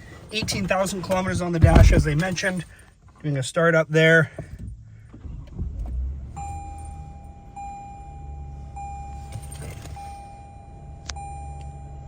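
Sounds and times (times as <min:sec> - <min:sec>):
car engine idling: 0:00.0 - 0:03.1.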